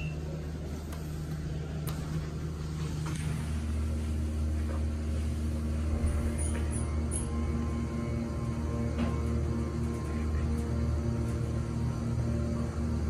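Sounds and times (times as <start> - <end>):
elevator motor hum: 0.0 - 13.0.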